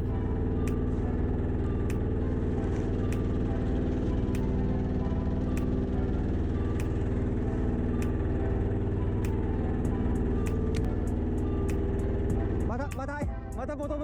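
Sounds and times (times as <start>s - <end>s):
boat engine humming: 0.0s - 14.0s
sharp clicks: 10.5s - 10.9s.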